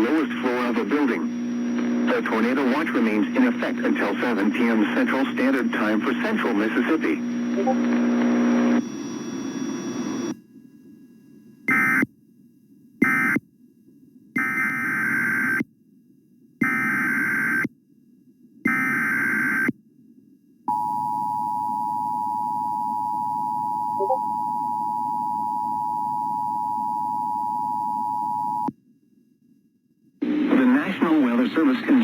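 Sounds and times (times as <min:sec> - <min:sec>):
two-tone attention signal: 0:07.6 - 0:07.8, 0:20.7 - 0:28.7.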